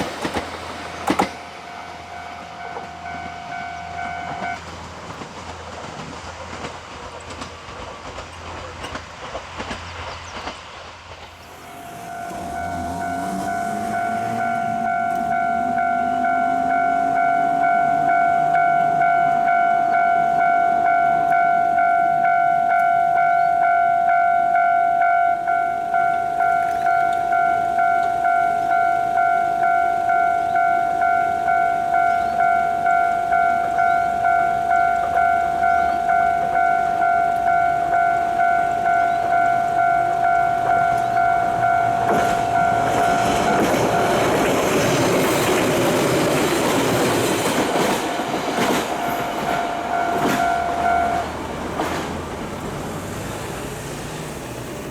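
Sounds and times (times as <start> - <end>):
train wheels clattering on rails: 0.0 - 54.9
level crossing bell ringing: 11.7 - 51.8.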